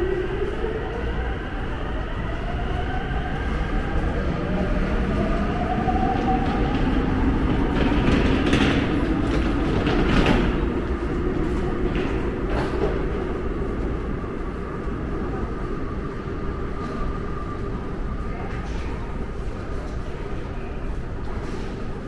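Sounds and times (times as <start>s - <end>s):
subway train rumbling on track: 0.0s - 22.0s.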